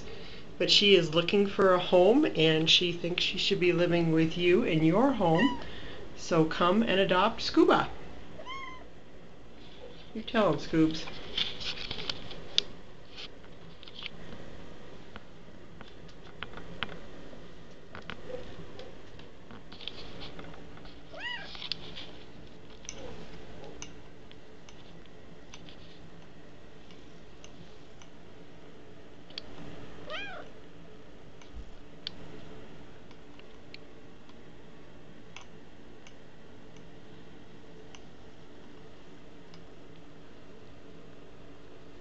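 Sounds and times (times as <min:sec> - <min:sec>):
kitten meowing: 0:05.4 - 0:05.6, 0:08.4 - 0:08.9, 0:21.1 - 0:21.5, 0:30.1 - 0:30.5.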